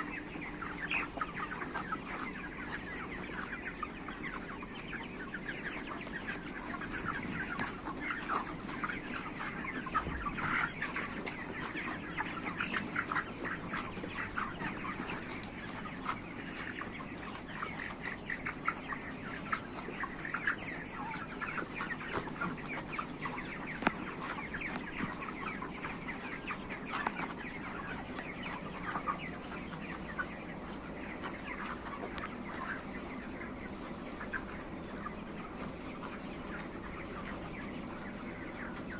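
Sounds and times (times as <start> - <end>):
chickens clucking and chirping: 0.0 - 38.9.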